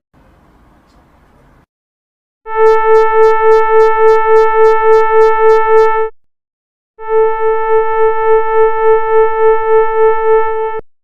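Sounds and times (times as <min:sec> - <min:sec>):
wavering air horn blast: 0:02.5 - 0:05.8, 0:07.0 - 0:10.8.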